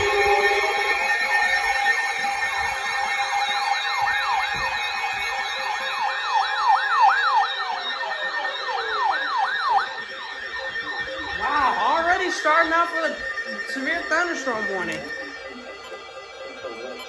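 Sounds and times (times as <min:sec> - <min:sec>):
steady tone: 0:00.0 - 0:06.0
electronic siren yelping: 0:00.0 - 0:17.0.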